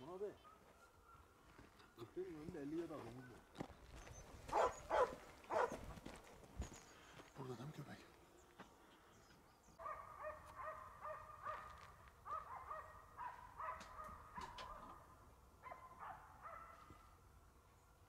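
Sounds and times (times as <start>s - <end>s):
distant hunting dogs baying: 0.4s - 1.9s, 3.0s - 6.0s, 9.7s - 17.2s.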